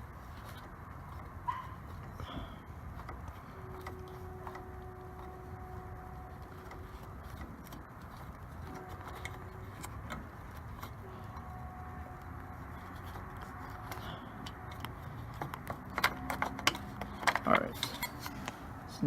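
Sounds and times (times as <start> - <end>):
low background hum: 0.0 - 19.0.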